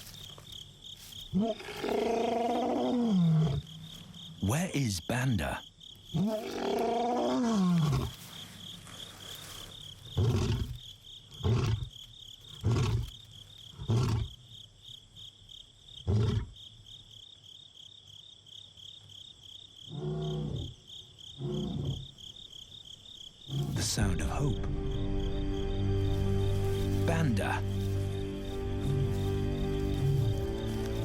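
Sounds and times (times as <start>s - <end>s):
crickets chirping: 0.0s - 31.0s
lion roaring and grunting: 1.3s - 3.7s, 6.1s - 8.2s, 10.2s - 10.8s, 19.9s - 20.8s, 21.4s - 22.1s, 23.5s - 24.1s.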